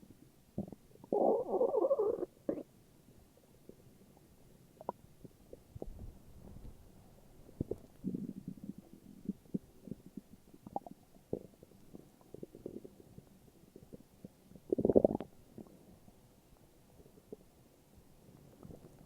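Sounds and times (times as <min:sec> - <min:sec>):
stomach growling and gurgling: 0:00.6 - 0:02.8, 0:03.6 - 0:06.8, 0:07.5 - 0:16.0, 0:18.5 - 0:19.0.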